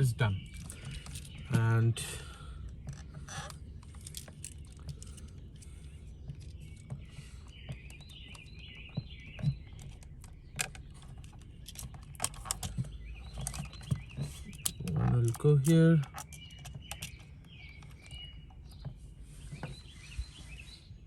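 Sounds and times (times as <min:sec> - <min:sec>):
bird chirping: 0:00.0 - 0:21.0.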